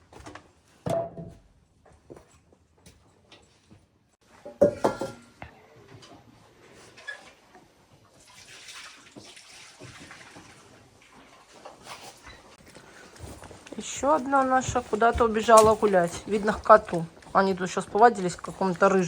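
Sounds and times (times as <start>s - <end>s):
water running: 7.3s - 12.2s.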